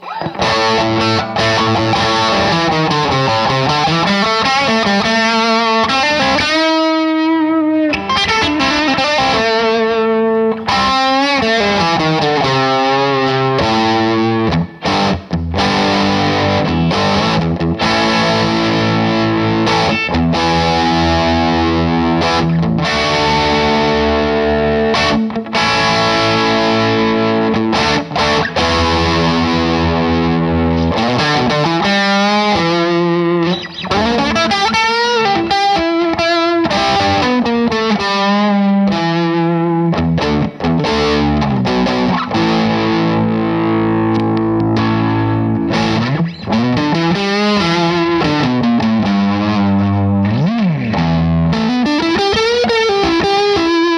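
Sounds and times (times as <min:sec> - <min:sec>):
distorted electric guitar: 0:00.0 - 0:53.9.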